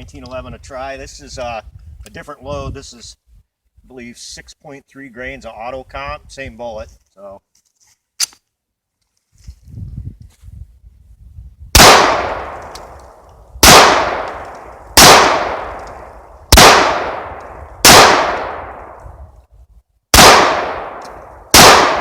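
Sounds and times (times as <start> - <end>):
pistol shots ringing out: 11.8 - 12.9, 13.6 - 19.0, 20.2 - 22.0.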